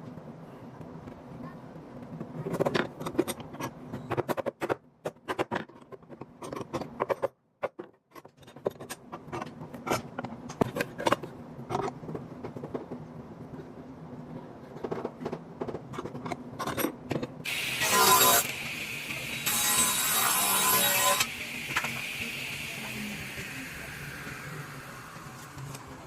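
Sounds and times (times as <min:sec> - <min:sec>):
wooden pieces knocking and clicking: 0:02.5 - 0:13.0.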